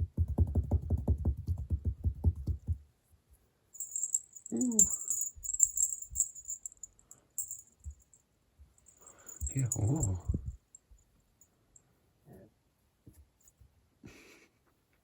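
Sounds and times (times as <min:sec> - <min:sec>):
high rattling jingle: 0:03.8 - 0:08.2, 0:08.8 - 0:10.9.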